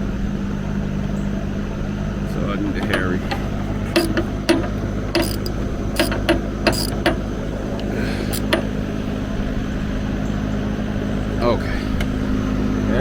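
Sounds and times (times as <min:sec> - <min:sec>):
steady low hum: 0:00.0 - 0:13.0
clicks and knocks on plastic: 0:02.8 - 0:08.7.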